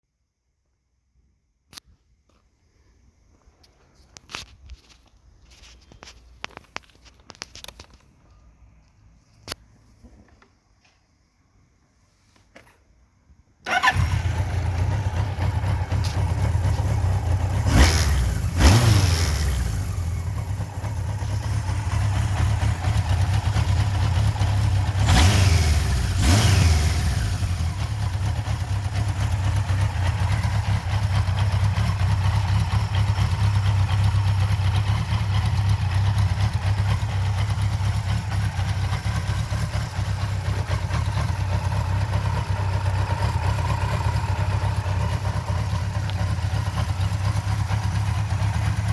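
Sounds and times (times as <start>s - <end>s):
motorcycle engine idling and revving: 13.6s - 48.9s.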